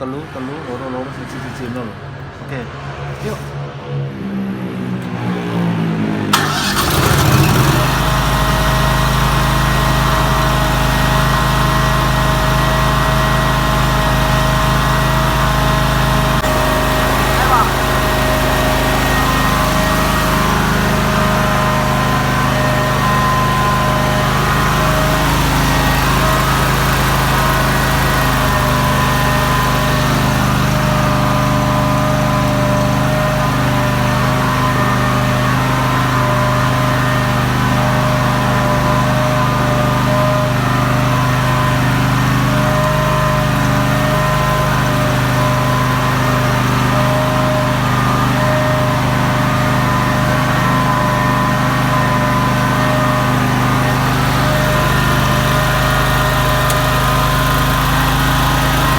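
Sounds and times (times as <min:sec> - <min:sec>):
generator engine running steadily: 0:06.3 - 0:58.9.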